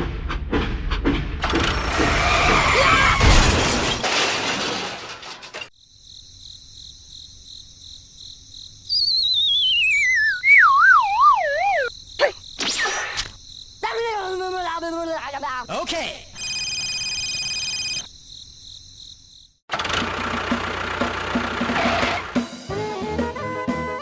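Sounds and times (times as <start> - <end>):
high chirping tone: 8.9 - 13.0
cartoon sliding whistle: 8.9 - 13.3.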